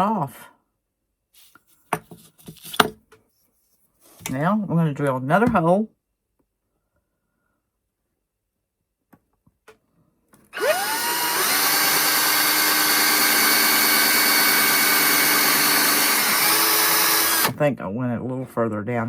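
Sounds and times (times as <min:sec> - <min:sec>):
electric drill whining: 0:10.5 - 0:17.6.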